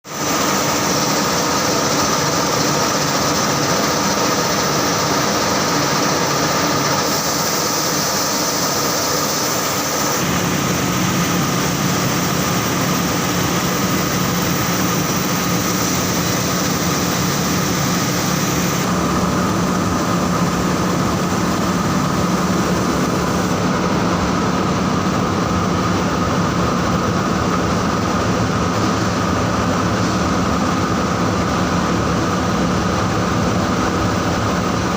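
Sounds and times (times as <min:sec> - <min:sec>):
carding machine drone: 0:00.1 - 0:34.9.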